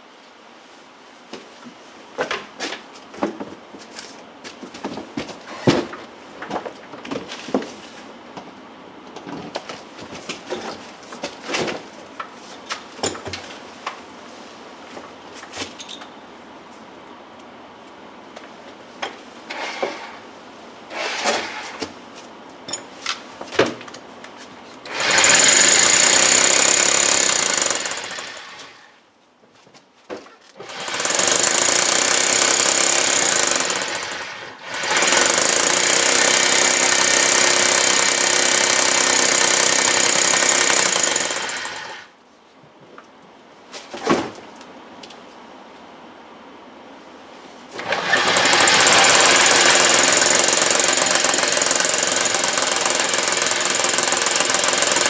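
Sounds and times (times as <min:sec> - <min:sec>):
hammer drill boring into concrete: 0:24.9 - 0:28.8, 0:30.6 - 0:42.1, 0:47.8 - 0:55.0.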